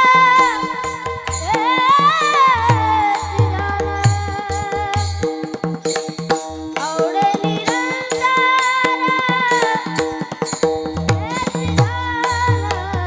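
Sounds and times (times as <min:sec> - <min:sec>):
tabla strokes: 0:00.0 - 0:13.0.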